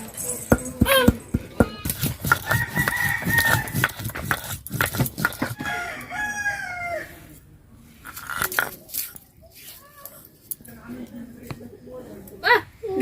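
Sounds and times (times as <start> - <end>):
spices pounded on stone grinder: 0.0 - 5.8
rooster crowing: 2.4 - 3.9, 5.4 - 7.4.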